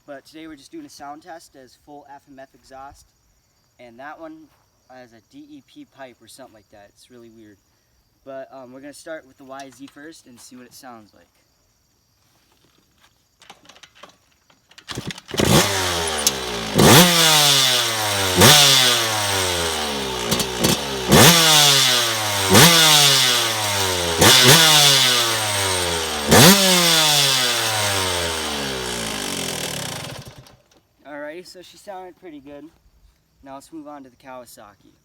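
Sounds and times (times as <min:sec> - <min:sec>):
two-stroke engine revving: 0:14.9 - 0:30.6.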